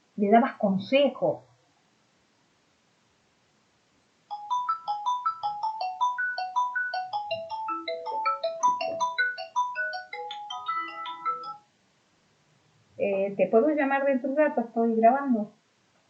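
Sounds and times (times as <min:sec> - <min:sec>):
phone ringtone: 0:04.3 - 0:11.7.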